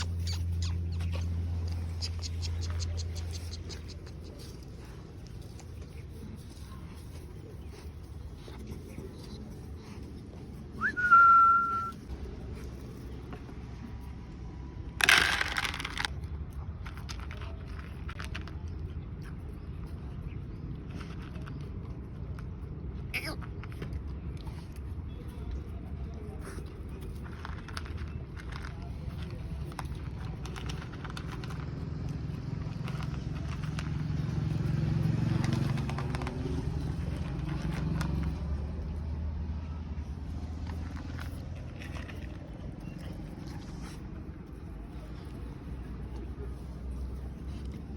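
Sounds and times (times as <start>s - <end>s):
vehicle engine running: 0.0s - 12.8s, 26.4s - 47.9s
small clicks and scrapes: 15.0s - 39.1s, 40.0s - 47.9s.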